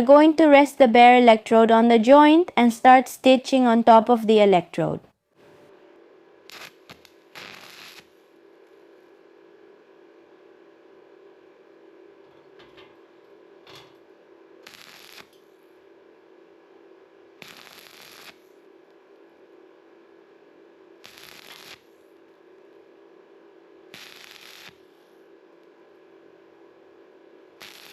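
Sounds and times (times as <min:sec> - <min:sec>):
steady hum: 0:00.0 - 0:24.2
welding arc crackling: 0:06.5 - 0:08.2, 0:14.6 - 0:15.4, 0:17.4 - 0:18.4, 0:21.0 - 0:21.9, 0:23.9 - 0:24.8, 0:27.6 - 0:27.9.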